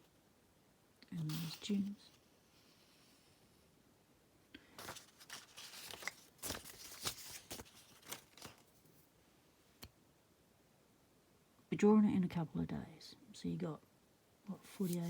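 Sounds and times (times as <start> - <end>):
paper rustling and crinkling: 4.8 - 9.0, 14.6 - 15.0.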